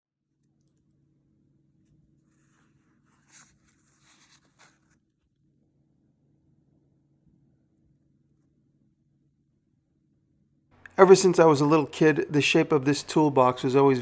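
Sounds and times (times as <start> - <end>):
faint steady hum: 0.3 - 14.0
soft scratching: 1.8 - 5.4.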